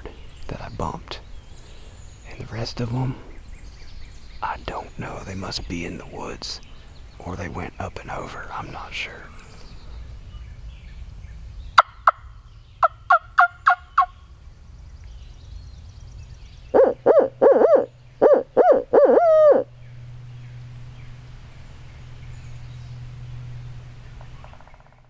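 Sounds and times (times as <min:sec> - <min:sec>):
owl hooting call: 0:16.7 - 0:19.7.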